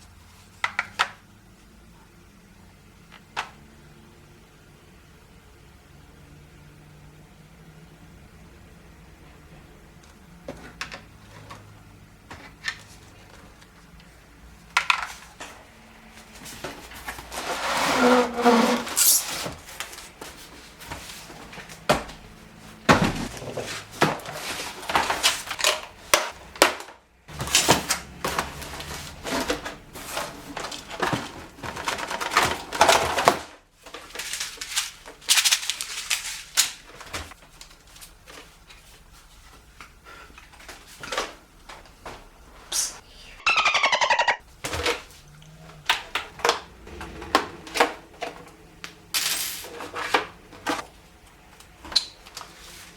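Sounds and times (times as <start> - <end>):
packaging rustling: 27.4 - 38.4.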